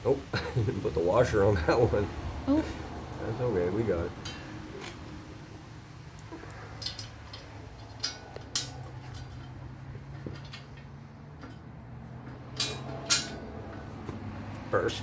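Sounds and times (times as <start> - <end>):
metal fasteners clinking: 3.0 - 15.0.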